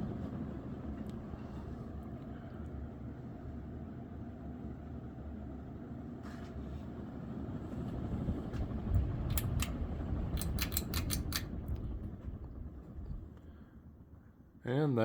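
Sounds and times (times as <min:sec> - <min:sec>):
ceiling fan running: 0:00.0 - 0:15.0
sharp clicks: 0:09.3 - 0:11.8.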